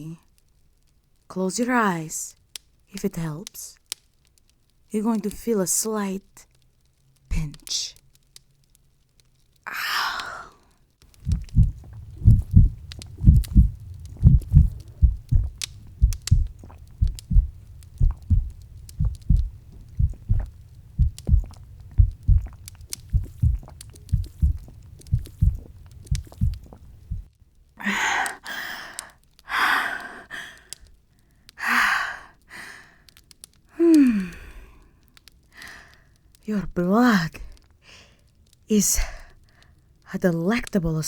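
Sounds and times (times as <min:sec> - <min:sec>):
heartbeat thumps: 0:11.1 - 0:27.3.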